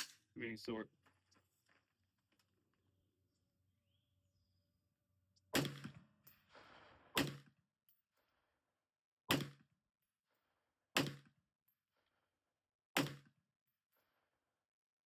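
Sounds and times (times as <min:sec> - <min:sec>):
rifle shots echoing: 0:05.6 - 0:07.4.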